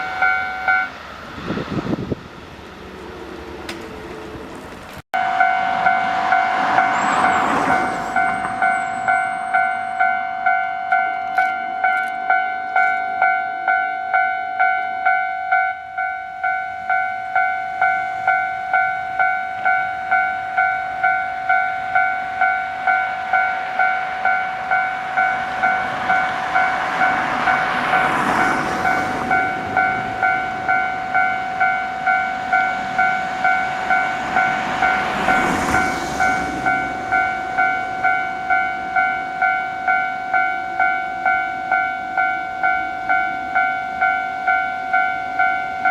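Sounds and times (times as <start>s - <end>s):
trains passing rushing: 0.0s - 45.9s.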